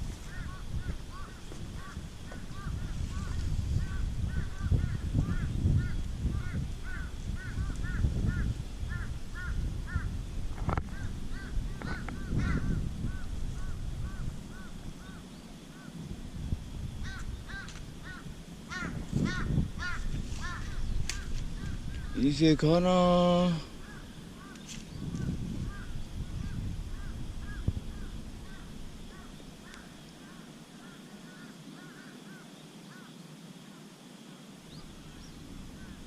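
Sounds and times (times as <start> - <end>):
bird calling: 10.9 - 16.0, 17.0 - 33.1.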